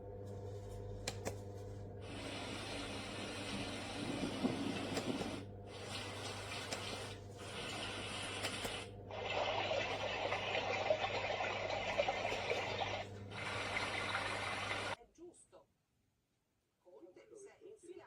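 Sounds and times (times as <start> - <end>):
water-like hiss from speaker: 2.0 - 15.0.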